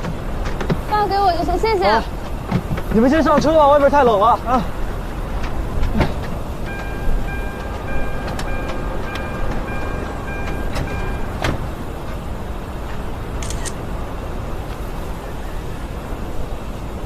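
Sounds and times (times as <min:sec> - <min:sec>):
car engine idling: 0:00.0 - 0:17.0
high repeating electronic beep: 0:06.7 - 0:11.4.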